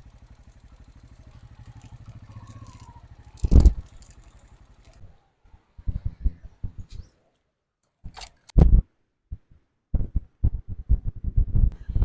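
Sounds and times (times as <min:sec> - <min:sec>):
motorcycle engine idling: 0:00.0 - 0:05.3.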